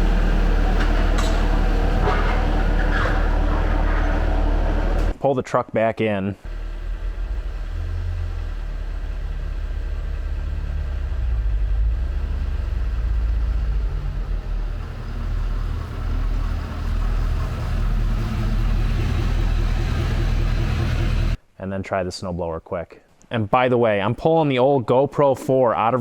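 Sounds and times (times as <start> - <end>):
vehicle engine running: 0.0 - 5.1, 6.5 - 21.4.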